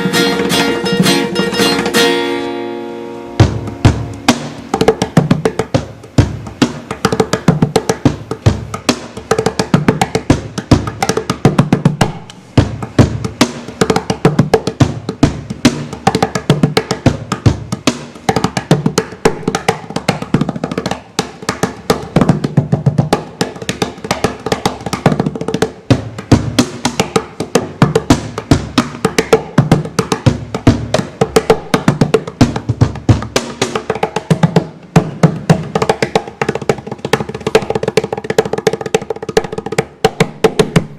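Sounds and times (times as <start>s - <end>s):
deep bass drum thumps: 3.4s - 6.7s
sharp snare-like hits: 3.4s - 8.2s.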